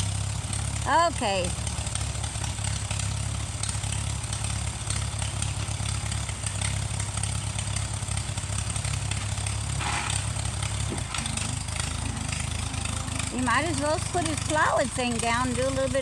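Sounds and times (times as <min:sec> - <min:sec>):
tractor engine running: 0:00.0 - 0:16.0.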